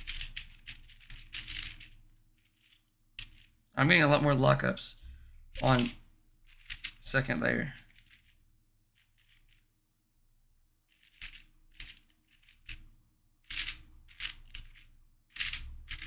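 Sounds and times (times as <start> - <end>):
speed cube layers clicking: 0.0 - 3.5, 5.6 - 7.1, 7.8 - 8.4, 10.9 - 12.8, 13.5 - 16.0.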